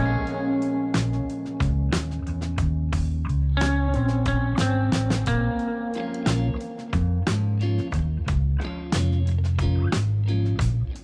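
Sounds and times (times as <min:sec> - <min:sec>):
guitar and bass music with beat: 0:00.0 - 0:11.0.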